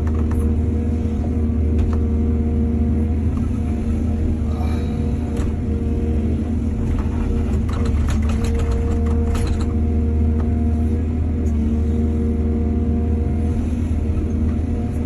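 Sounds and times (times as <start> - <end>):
excavator diesel engine running: 0.0 - 15.0
rattling clicks and clanks: 6.8 - 9.8.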